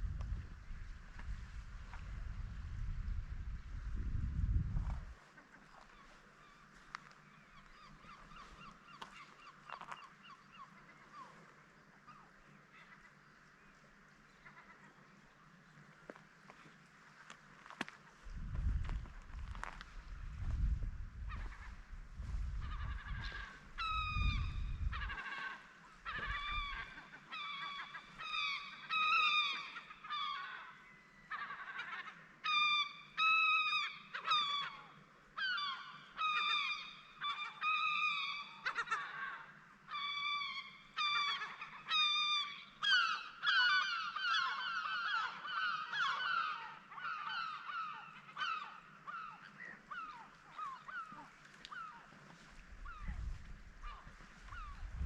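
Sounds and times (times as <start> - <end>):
gulls calling: 18.4 - 55.0.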